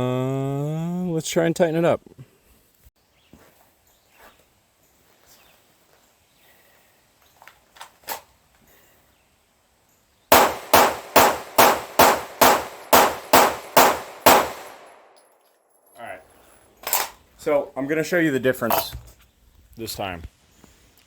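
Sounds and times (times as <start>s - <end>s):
pistol shots: 10.3s - 15.2s.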